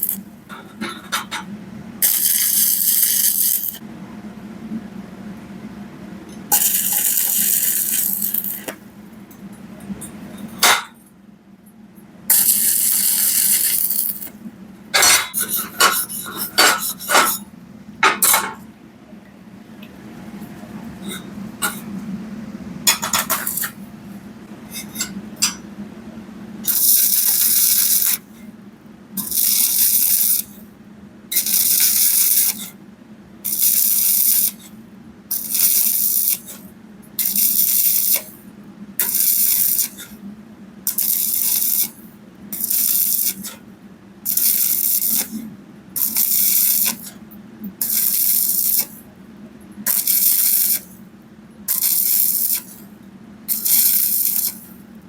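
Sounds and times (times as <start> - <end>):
welding arc crackling: 0.0 - 1.3, 2.0 - 3.8, 6.5 - 8.8, 12.3 - 14.4, 22.9 - 23.8, 26.7 - 28.3, 29.2 - 30.6, 31.3 - 32.7, 33.4 - 34.7, 35.3 - 38.4, 39.0 - 40.2, 40.9 - 43.6, 44.2 - 45.4, 46.0 - 47.2, 47.8 - 49.1, 49.9 - 51.0, 51.7 - 52.9, 53.5 - 54.8.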